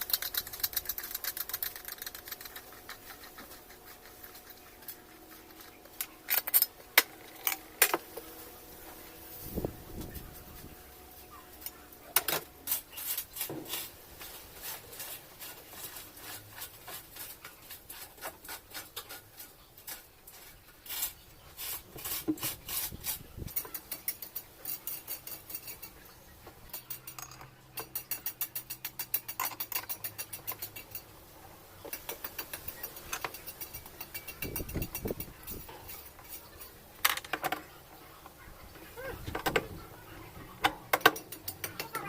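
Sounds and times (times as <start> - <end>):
metal tools clicking and scraping: 0.0 - 8.0, 22.6 - 31.2, 31.8 - 42.0.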